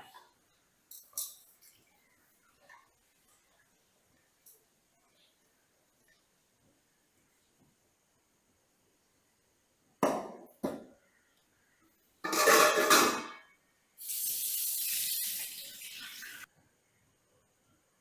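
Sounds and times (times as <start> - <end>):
dishware clatter: 12.2 - 13.5
dishware clinks: 12.3 - 13.5
steady hiss: 12.5 - 18.0.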